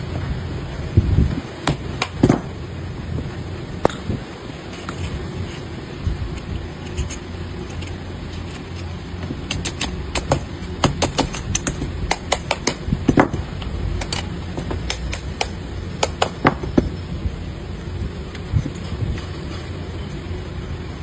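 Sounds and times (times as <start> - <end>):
steady low hum: 0.0 - 21.0
small metal parts clinking: 3.8 - 5.7.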